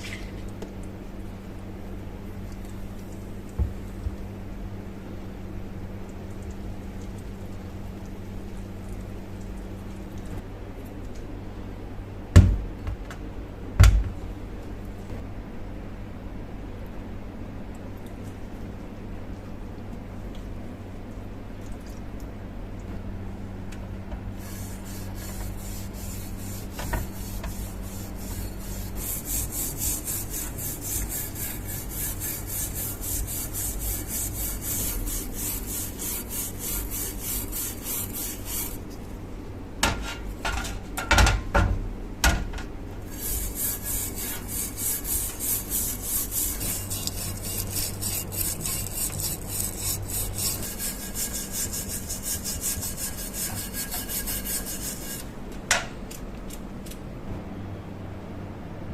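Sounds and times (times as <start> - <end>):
file rasping on axe: 24.5 - 38.8, 43.1 - 55.3.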